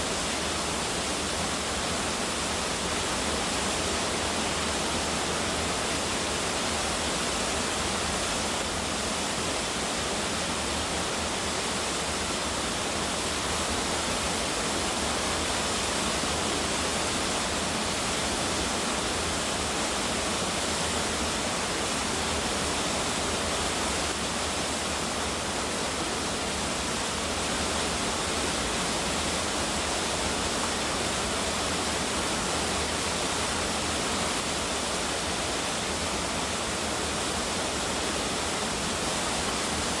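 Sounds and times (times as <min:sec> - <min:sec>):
waterfall rushing: 0:00.0 - 0:40.0.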